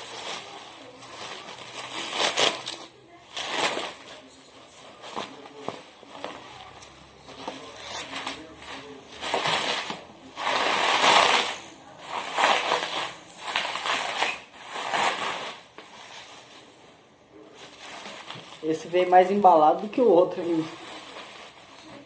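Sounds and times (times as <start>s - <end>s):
packing paper tearing and crumpling: 0.0s - 4.4s, 7.3s - 16.4s.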